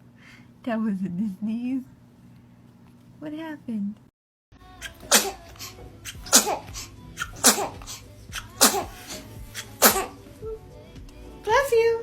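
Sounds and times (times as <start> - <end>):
baby sneezing: 4.8 - 10.2.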